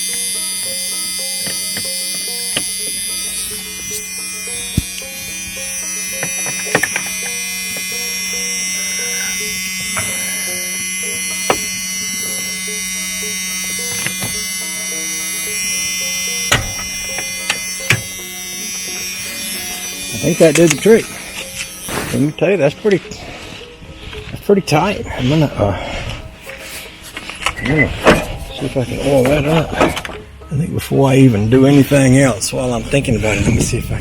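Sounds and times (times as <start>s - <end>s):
steady buzzing hum: 0.0s - 34.0s
faint background music: 12.0s - 34.0s.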